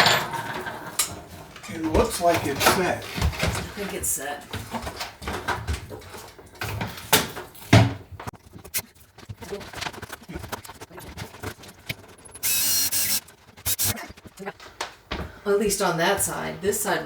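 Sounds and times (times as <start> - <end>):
cordless drill driving screw: 12.4 - 14.0.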